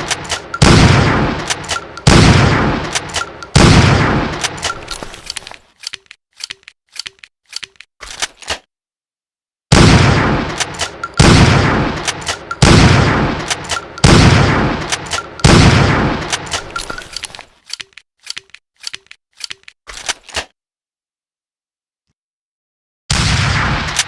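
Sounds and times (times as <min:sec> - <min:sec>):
shotgun shots echoing: 0:00.0 - 0:05.3, 0:09.7 - 0:17.1
shotgun pump action clack: 0:01.4 - 0:02.2, 0:02.8 - 0:03.6, 0:04.4 - 0:07.8, 0:10.6 - 0:11.3, 0:12.0 - 0:12.7, 0:14.8 - 0:15.6, 0:16.3 - 0:19.7.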